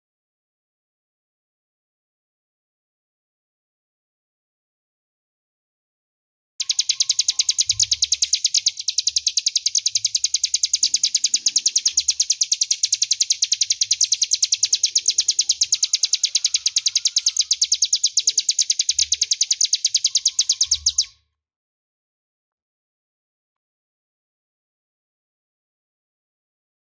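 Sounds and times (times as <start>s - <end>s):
bird singing rapid trill: 6.6s - 21.2s.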